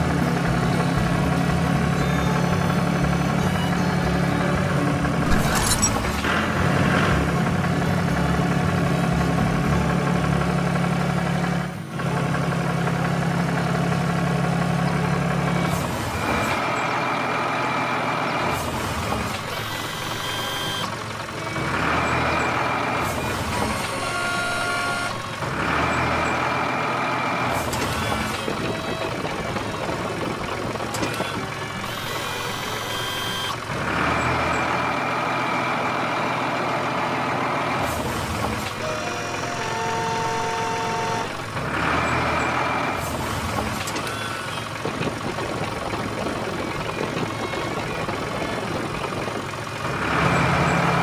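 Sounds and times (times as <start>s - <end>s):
truck engine running: 0.0s - 51.0s
long tonal beeps: 1.9s - 4.6s, 19.5s - 21.0s, 31.7s - 33.6s.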